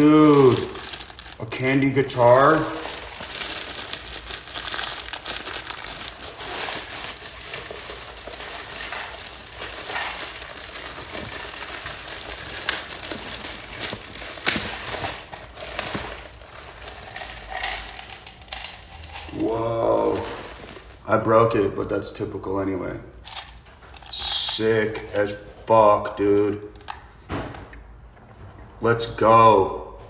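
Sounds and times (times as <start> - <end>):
packaging rustling and crinkling: 0.0 - 21.0, 23.3 - 25.6.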